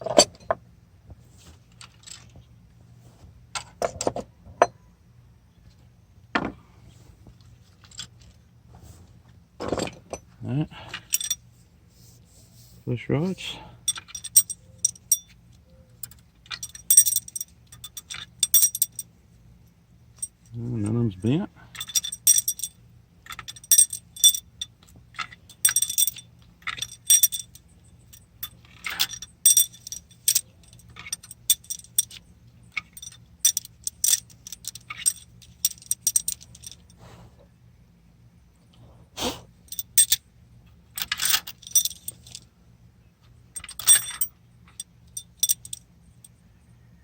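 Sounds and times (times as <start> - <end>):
metal rods clinking and rattling: 9.6 - 11.5, 13.8 - 15.4, 16.0 - 19.1, 20.1 - 21.1, 21.7 - 37.0, 39.7 - 40.2, 41.0 - 42.5, 43.5 - 46.4.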